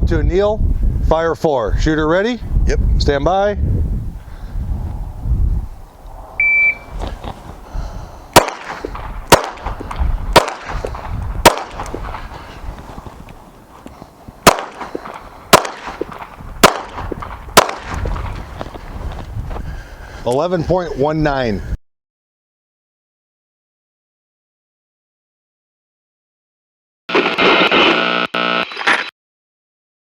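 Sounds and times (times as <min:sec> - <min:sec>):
shot timer beep: 0:06.4 - 0:06.9
pistol shots: 0:08.4 - 0:12.4, 0:14.4 - 0:18.4.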